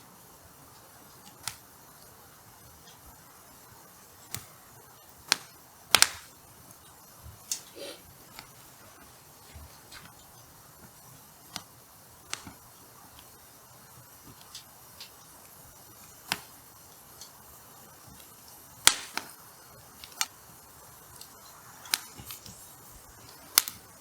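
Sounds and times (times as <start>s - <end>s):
firewood burning and crackling: 0.0s - 24.0s
sharp pops of burning wood: 1.1s - 3.4s, 4.0s - 7.7s, 10.8s - 15.3s, 15.9s - 22.6s, 23.2s - 24.0s.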